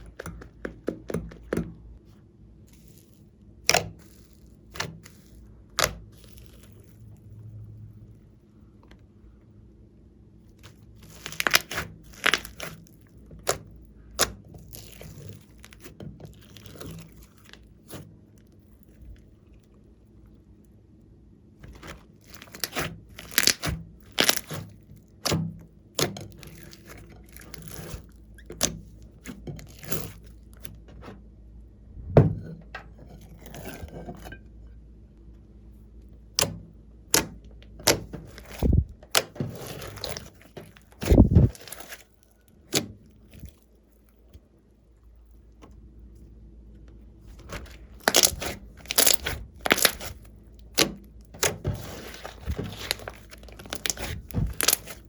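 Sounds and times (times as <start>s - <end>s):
heavy thuds: 31.9s - 32.8s
slime sticky clicks and pops: 47.6s - 50.2s.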